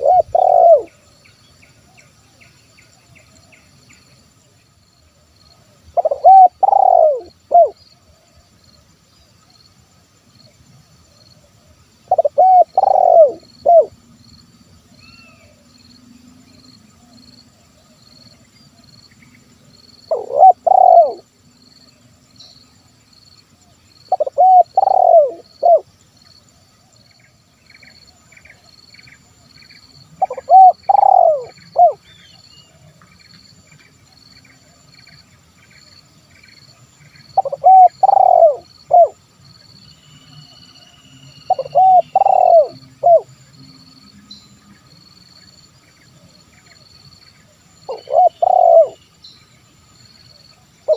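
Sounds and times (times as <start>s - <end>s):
dove cooing: 0.0s - 0.9s, 6.0s - 7.8s, 12.1s - 13.9s, 20.1s - 21.3s, 24.1s - 25.9s, 30.2s - 32.0s, 37.4s - 39.2s, 41.5s - 43.3s, 47.9s - 49.0s
small bird chirping: 5.4s - 8.0s, 12.1s - 13.9s, 18.0s - 22.8s, 23.8s - 43.3s, 44.2s - 50.9s.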